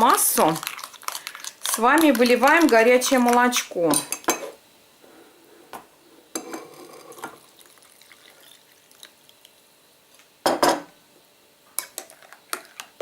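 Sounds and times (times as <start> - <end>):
milk pouring into a bowl: 7.4 - 9.5
dishware knock: 10.5 - 10.9.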